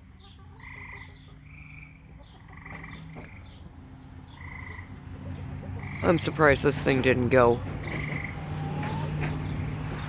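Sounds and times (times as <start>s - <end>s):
frogs calling: 0.1s - 6.3s, 7.8s - 9.2s.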